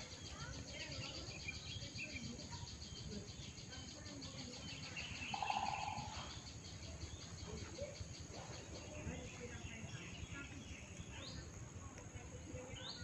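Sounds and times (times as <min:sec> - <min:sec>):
rapid bird trill: 0:00.0 - 0:09.0
insect chirring: 0:00.0 - 0:09.2
small birds chirping: 0:00.0 - 0:13.0.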